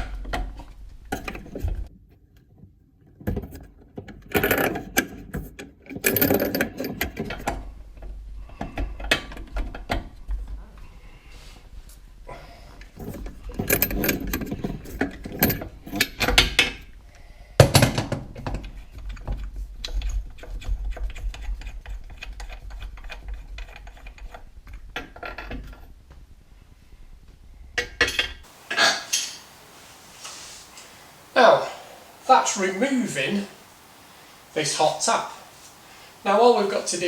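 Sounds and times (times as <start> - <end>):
spanner clinking on metal tap: 4.3 - 7.5, 13.0 - 16.7.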